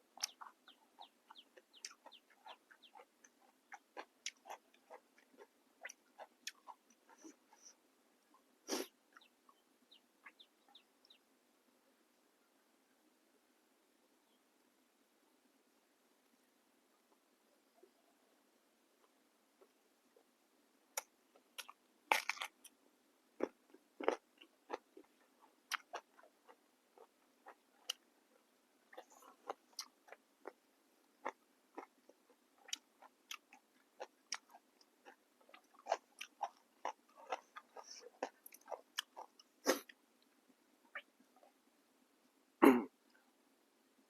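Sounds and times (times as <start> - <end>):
person chewing crunchy vegetables: 0.1 - 7.8, 21.0 - 22.8, 23.4 - 40.0.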